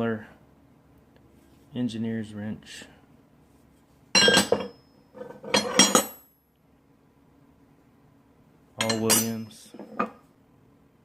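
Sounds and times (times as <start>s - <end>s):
metal wrenches clanking together: 4.2s - 6.2s, 8.8s - 10.2s.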